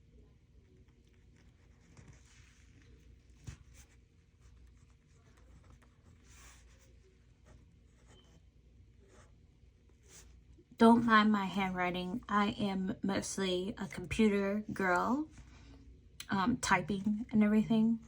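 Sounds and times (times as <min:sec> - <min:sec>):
pen scratching on paper: 0:01.4 - 0:08.4.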